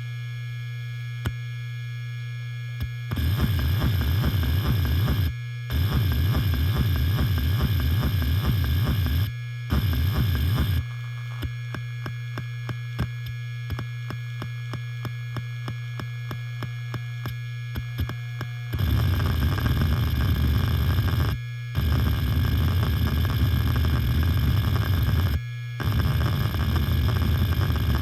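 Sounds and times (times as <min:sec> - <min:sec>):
hard disk spindle hum: 0:00.0 - 0:28.0
hard disk seek chatter: 0:03.1 - 0:28.0
hard disk ticks: 0:03.2 - 0:10.8.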